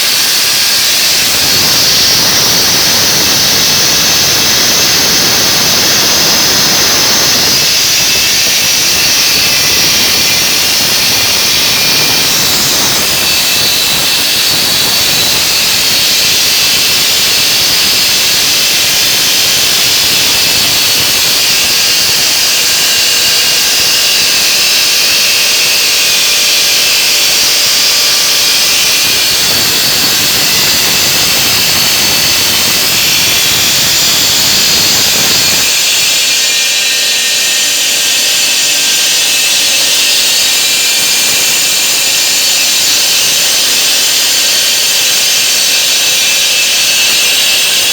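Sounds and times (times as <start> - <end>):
stone-cutting blade grinding: 0.0 - 47.9.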